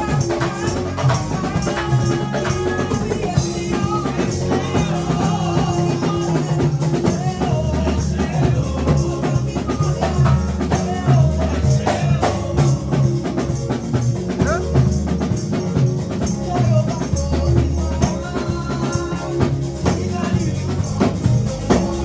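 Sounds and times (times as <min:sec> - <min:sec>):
drums: 0:00.0 - 0:22.0
held bass notes: 0:00.0 - 0:22.0
people singing: 0:00.0 - 0:22.0
tambourine: 0:00.0 - 0:22.0.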